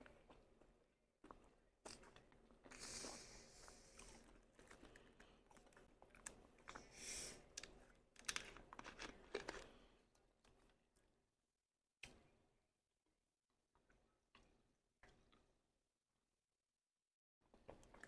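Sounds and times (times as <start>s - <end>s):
person chewing crunchy food: 0.0s - 10.8s, 17.5s - 18.0s.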